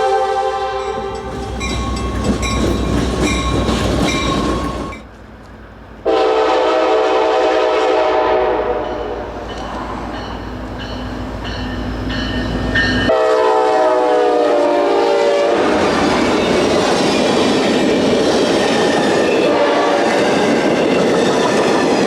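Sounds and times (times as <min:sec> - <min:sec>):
locomotive air horn: 0:00.0 - 0:01.1, 0:06.0 - 0:09.3, 0:13.1 - 0:16.0, 0:19.4 - 0:20.2
bell ringing: 0:00.8 - 0:05.0.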